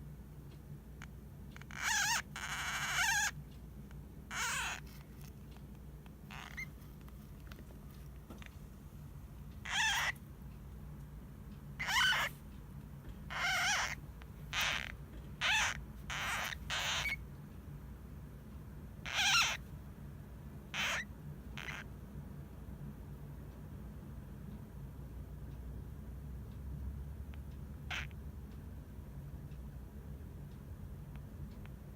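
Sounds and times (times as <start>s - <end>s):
hamster squeaking: 1.0s - 7.4s, 9.5s - 10.3s, 11.8s - 17.4s, 19.0s - 19.8s, 20.6s - 22.0s, 27.3s - 28.2s.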